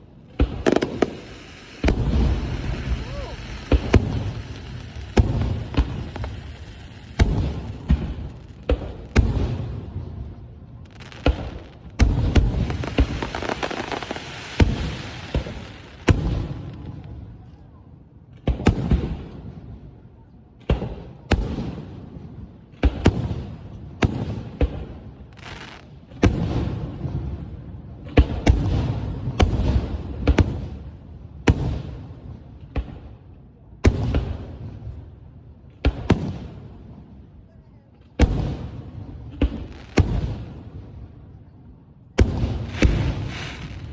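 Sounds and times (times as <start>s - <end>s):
crackling hiss: 0.3s - 16.9s, 25.2s - 26.0s, 42.2s - 43.9s.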